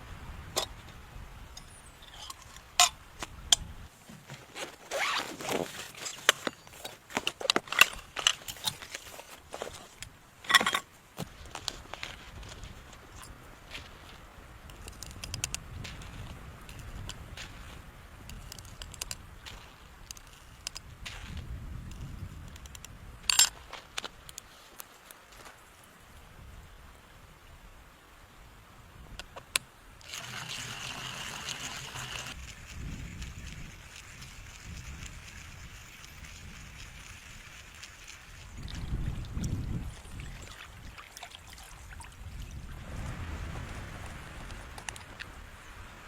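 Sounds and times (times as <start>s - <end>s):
crackling rustle: 1.9s - 25.9s, 30.0s - 40.8s
tent zipper being drawn: 4.4s - 6.9s
low wind rumble: 42.0s - 46.0s.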